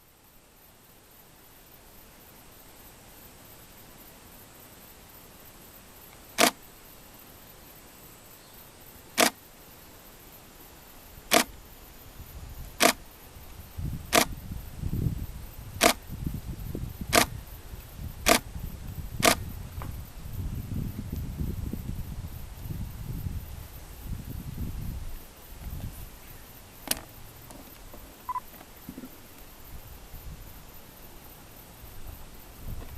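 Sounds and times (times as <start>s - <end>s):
sharp clicks: 6.4s - 6.6s, 9.2s - 9.4s, 11.3s - 11.6s, 12.8s - 13.0s, 14.1s - 14.3s, 15.8s - 16.0s, 17.1s - 17.3s, 26.8s - 27.1s.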